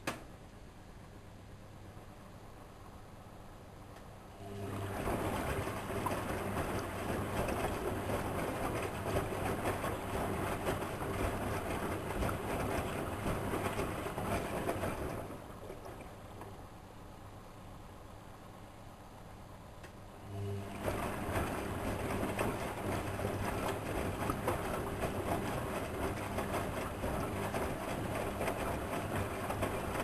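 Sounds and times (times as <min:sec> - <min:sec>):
washing machine running: 0:04.2 - 0:18.8, 0:19.5 - 0:30.0
water rushing and sloshing: 0:04.5 - 0:16.7, 0:20.6 - 0:30.0.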